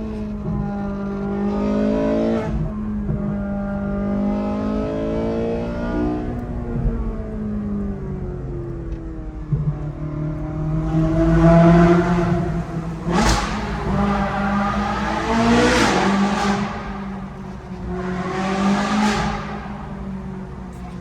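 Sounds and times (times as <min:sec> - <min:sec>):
sports car engine revving: 0:00.0 - 0:21.0
sharp exhaust cracks: 0:10.6 - 0:21.0.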